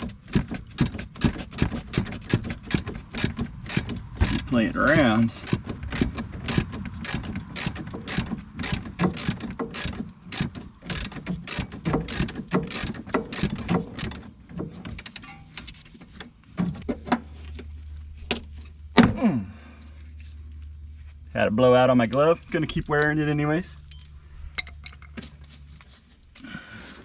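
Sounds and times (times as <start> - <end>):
ratchet wrench clicking: 2.0 - 14.2.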